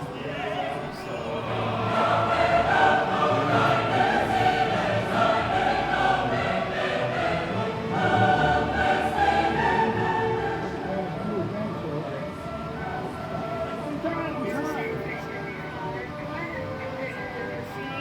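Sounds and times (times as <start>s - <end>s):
choir singing held notes: 0.0s - 11.6s, 12.3s - 14.1s.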